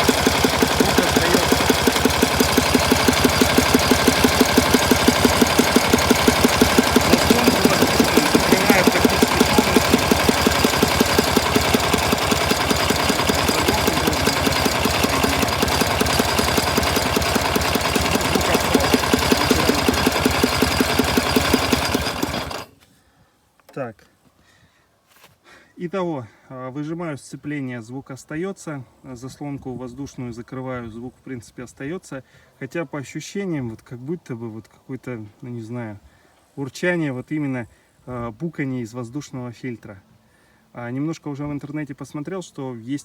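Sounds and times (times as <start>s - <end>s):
motorcycle engine knocking: 0.0s - 22.7s.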